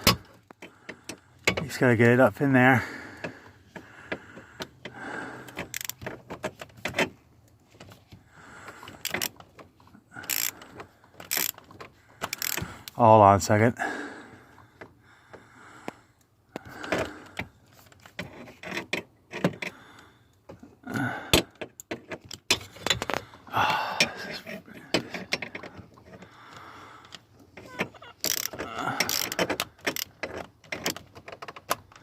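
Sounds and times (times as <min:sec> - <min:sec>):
ratchet clicking: 0:05.7 - 0:06.0, 0:10.2 - 0:10.5, 0:11.3 - 0:11.6, 0:12.3 - 0:13.0, 0:28.2 - 0:30.1.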